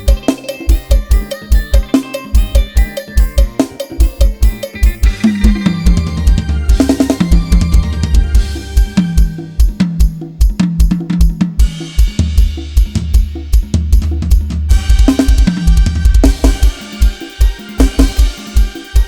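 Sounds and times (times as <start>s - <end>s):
bass line: 0.0s - 18.8s
snare and hi-hat: 0.0s - 19.0s
kick drum pulse: 4.2s - 16.8s
cymbals washing: 14.7s - 19.0s.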